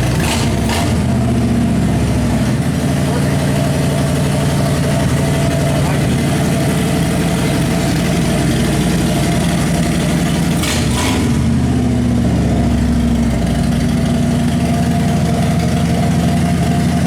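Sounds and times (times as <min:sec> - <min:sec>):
motorcycle engine idling and revving: 0:00.0 - 0:17.0.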